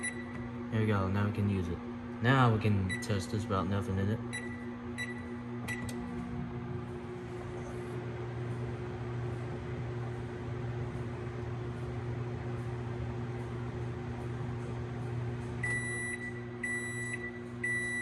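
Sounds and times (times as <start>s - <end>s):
microwave beep: 0.0s - 0.5s, 2.8s - 3.2s, 4.3s - 6.1s, 15.5s - 18.0s
microwave electrical hum: 0.0s - 18.0s
microwave fan whirring: 0.0s - 18.0s.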